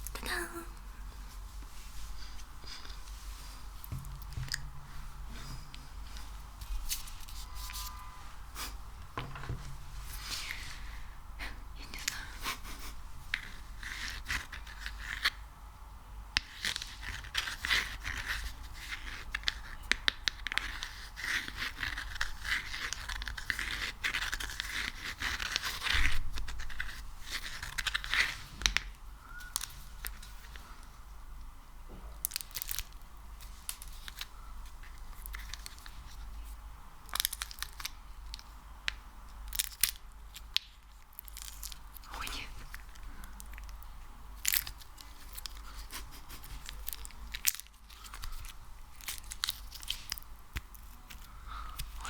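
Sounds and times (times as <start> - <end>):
sticky material crackling and tearing: 16.4 - 30.6, 37.0 - 38.5, 39.4 - 52.0.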